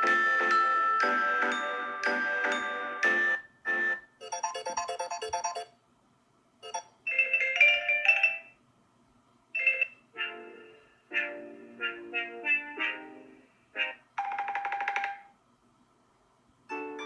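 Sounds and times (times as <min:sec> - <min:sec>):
phone ringtone melody: 0:00.0 - 0:05.7, 0:06.6 - 0:08.6, 0:14.2 - 0:15.3, 0:16.7 - 0:17.0.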